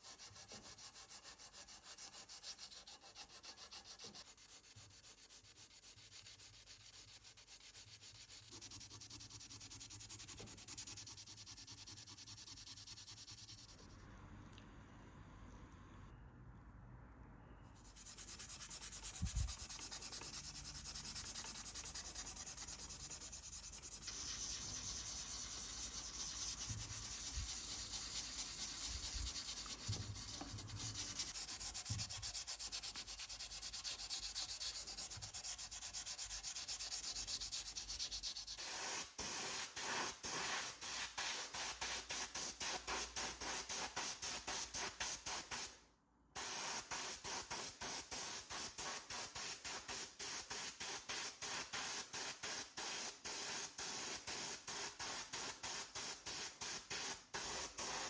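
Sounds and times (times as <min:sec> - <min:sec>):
sandpaper rubbing: 0:00.0 - 0:13.9, 0:17.8 - 0:45.5
aerosol spray hiss: 0:38.6 - 0:45.7, 0:46.4 - 0:58.0.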